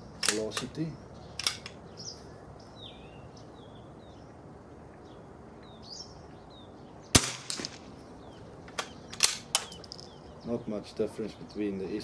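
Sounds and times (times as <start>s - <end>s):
birds chirping: 0.0s - 12.0s
rifle bolt clicks: 0.2s - 0.8s, 1.4s - 1.8s
rifle gunshot: 7.1s - 7.8s.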